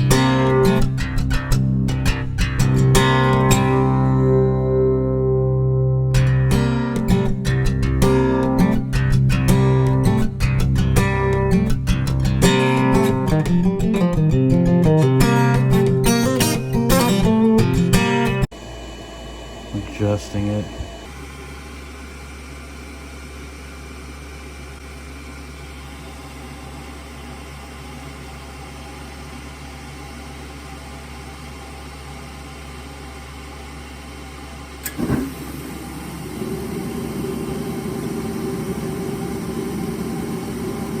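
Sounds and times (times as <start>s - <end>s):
furnace electrical hum: 0.0s - 41.0s
furnace motor running: 6.1s - 41.0s
motor switching on click: 34.8s - 35.4s.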